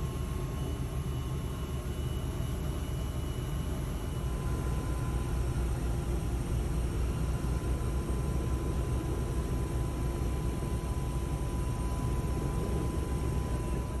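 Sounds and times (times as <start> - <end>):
faint steady whine: 0.0 - 14.0
helicopter rumble: 2.8 - 14.0.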